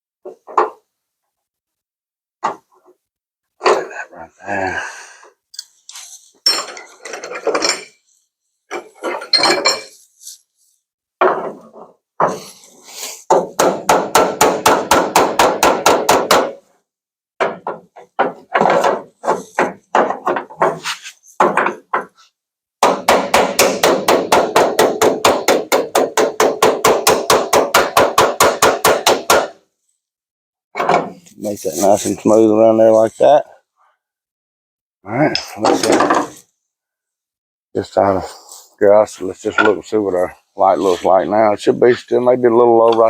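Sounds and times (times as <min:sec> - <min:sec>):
hammer tapping sheet metal: 0:13.4 - 0:16.6, 0:22.8 - 0:29.6.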